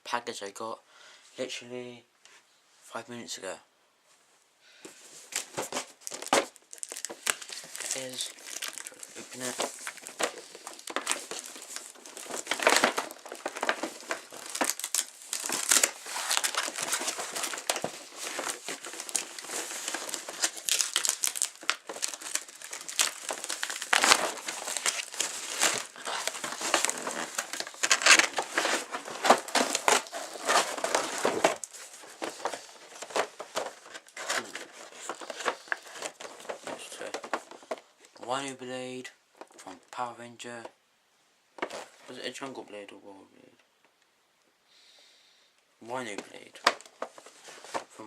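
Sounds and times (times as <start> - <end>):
packaging crinkling: 5.2 - 38.0, 46.4 - 48.0.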